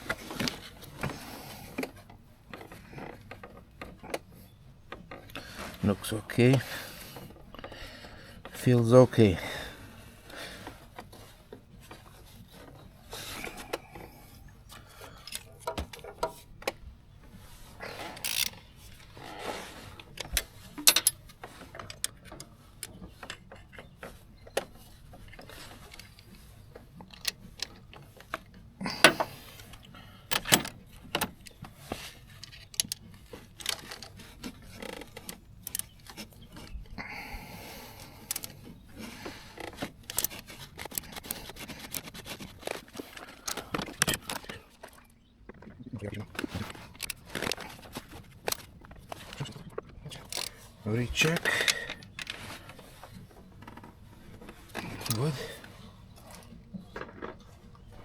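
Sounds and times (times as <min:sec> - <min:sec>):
hand tools clinking on metal: 0:18.2 - 0:18.6, 0:20.8 - 0:21.3, 0:28.8 - 0:29.6, 0:30.3 - 0:31.3, 0:54.8 - 0:55.7.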